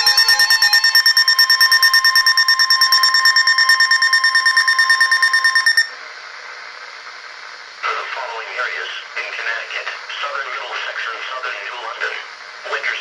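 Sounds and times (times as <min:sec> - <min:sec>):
rapid pulsing beeps: 0:00.0 - 0:06.0
steady high tone: 0:00.0 - 0:06.0
faint radio hiss: 0:06.0 - 0:13.0.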